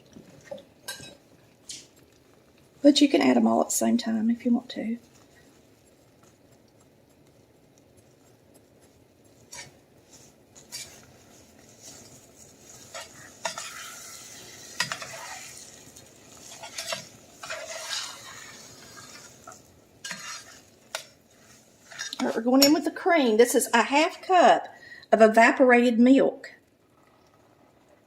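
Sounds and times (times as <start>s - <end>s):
spoon scraping a saucepan: 9.3s - 23.0s.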